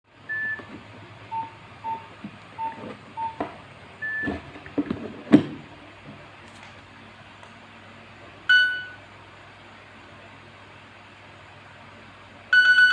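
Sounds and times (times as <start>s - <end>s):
phone keypad beeps: 0.3s - 0.7s, 1.3s - 3.4s, 8.5s - 9.0s, 12.6s - 12.9s.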